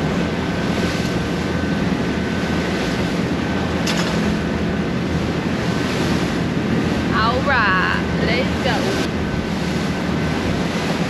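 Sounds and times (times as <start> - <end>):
boat motor running: 0.0 - 11.0
choppy water washing: 0.0 - 11.0
wind buffeting microphone: 0.0 - 11.0.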